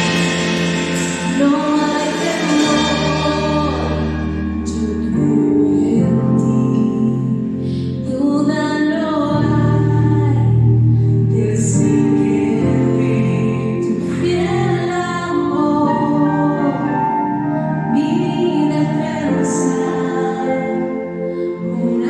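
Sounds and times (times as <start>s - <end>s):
instrumental accompaniment: 0.0s - 7.6s
person singing: 0.0s - 10.6s, 11.2s - 22.0s.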